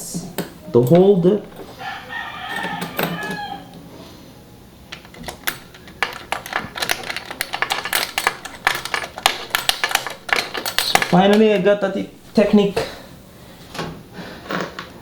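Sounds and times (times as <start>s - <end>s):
person speaking: 0.0s - 1.8s, 10.9s - 13.1s
small metal and plastic parts clicking: 4.9s - 11.6s.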